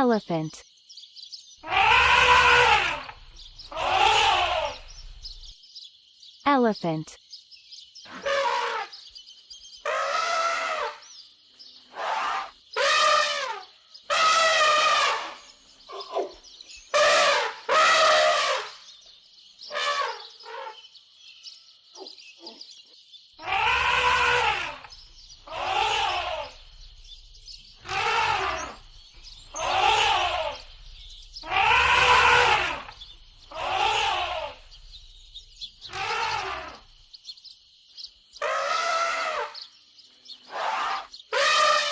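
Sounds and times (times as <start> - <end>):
elephant trumpeting: 1.6 - 5.2, 8.1 - 8.9, 9.8 - 11.0, 11.9 - 16.3, 16.9 - 18.8, 19.7 - 20.8, 23.4 - 37.0, 38.4 - 39.6, 40.5 - 41.9.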